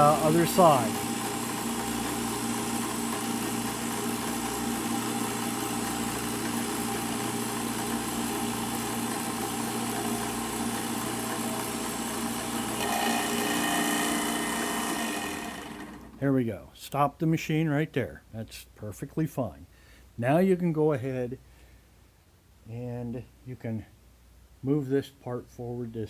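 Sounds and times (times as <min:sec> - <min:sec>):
end mill cutting metal: 0:00.0 - 0:16.2
milling machine motor hum: 0:00.0 - 0:16.2.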